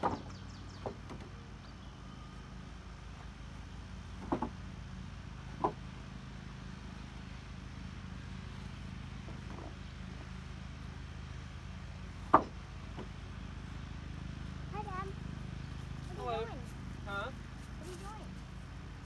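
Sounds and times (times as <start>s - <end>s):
low machine hum: 0.0s - 19.0s
sharp knocks: 4.2s - 4.6s, 12.3s - 13.1s.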